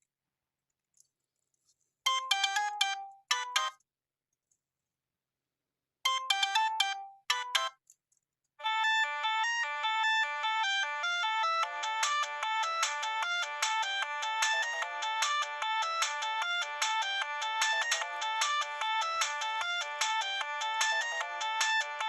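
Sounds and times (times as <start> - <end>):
mobile phone polyphonic ringtone: 2.1 - 3.8, 6.1 - 7.8, 8.6 - 22.0.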